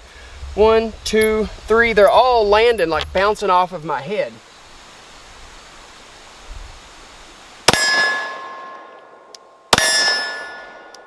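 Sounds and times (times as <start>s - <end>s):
pistol shots: 7.7s - 8.6s
steel target plate ringing: 7.7s - 9.0s, 9.8s - 10.9s.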